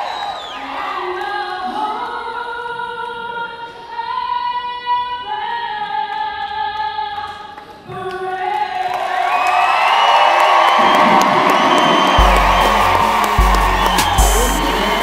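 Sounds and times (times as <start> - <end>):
choir-like voices holding chords: 12.2 - 15.0.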